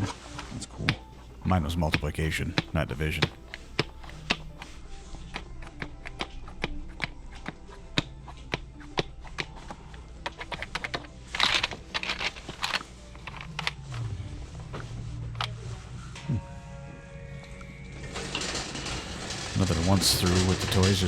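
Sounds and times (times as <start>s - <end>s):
plastic toys clicking and rattling: 9.0s - 13.8s, 18.0s - 21.0s.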